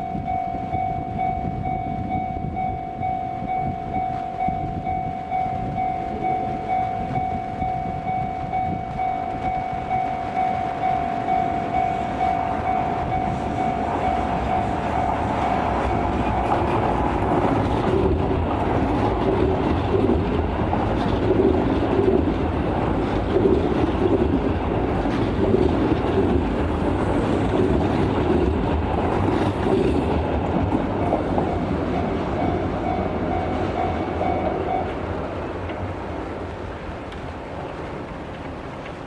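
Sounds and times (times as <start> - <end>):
level crossing warning bell: 0.0 - 18.2, 30.9 - 35.0
train wheels rumbling on rails: 0.0 - 39.0
wheels clacking over rail joints: 5.4 - 39.0.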